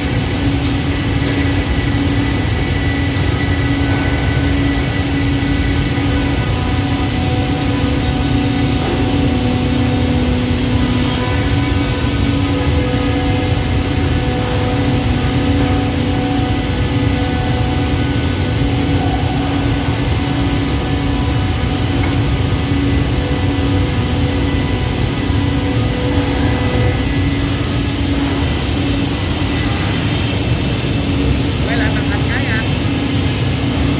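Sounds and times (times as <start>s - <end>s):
high whine: 0.0s - 33.9s
scroll saw humming: 4.8s - 29.3s.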